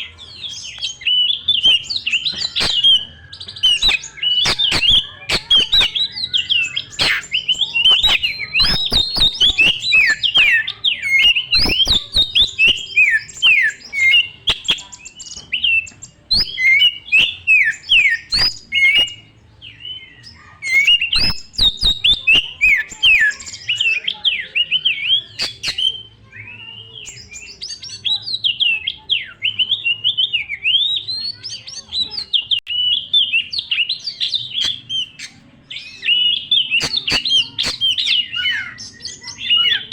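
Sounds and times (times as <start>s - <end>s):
bird singing whistled phrases: 0.0s - 39.9s
bird sharp clicks: 1.7s - 19.2s, 20.7s - 23.8s, 25.4s - 25.9s, 36.0s - 38.7s.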